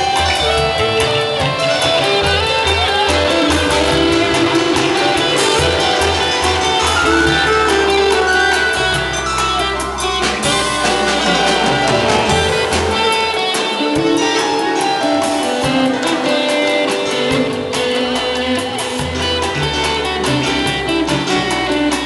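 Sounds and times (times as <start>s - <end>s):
band playing instrumental music: 0.0s - 22.0s
guitar: 0.0s - 22.0s.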